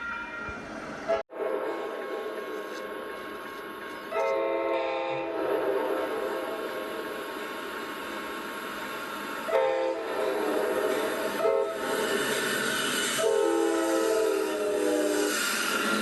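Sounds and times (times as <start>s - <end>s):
locomotive air horn blasts: 0.0s - 2.8s, 4.1s - 6.5s, 9.5s - 12.4s, 13.0s - 15.7s
moving train noise: 0.0s - 16.0s.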